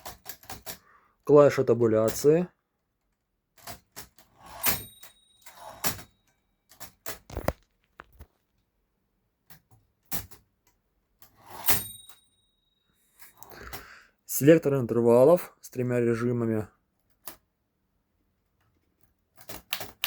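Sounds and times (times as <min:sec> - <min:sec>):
typewriter carriage sliding and clacking: 0:00.0 - 0:00.8, 0:03.6 - 0:07.5, 0:11.2 - 0:12.2
typewriter keys clicking: 0:19.4 - 0:20.0.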